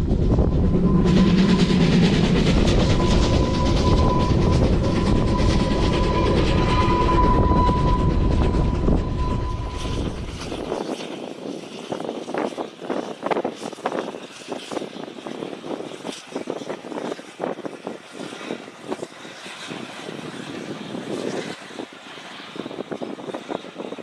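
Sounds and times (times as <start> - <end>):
steady high tone: 0.0 - 10.8
steam train passing: 0.0 - 16.4.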